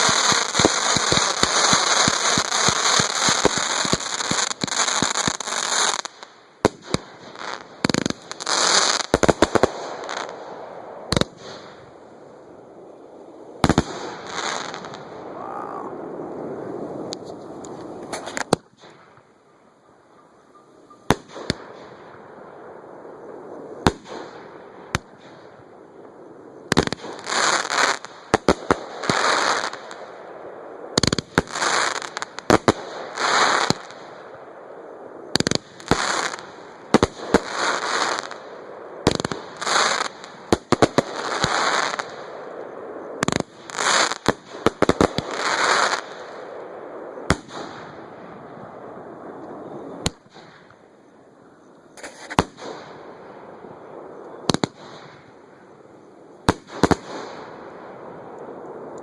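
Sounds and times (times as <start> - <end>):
firework bangs: 0.0 - 12.0, 23.2 - 25.5, 35.3 - 50.8, 51.9 - 55.4, 56.4 - 59.0
crackling firework bursts: 0.0 - 19.5, 21.0 - 59.0.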